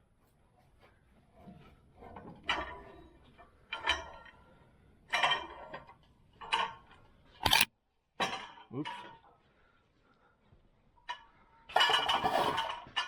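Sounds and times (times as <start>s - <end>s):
metal tools clanking: 7.4s - 7.7s.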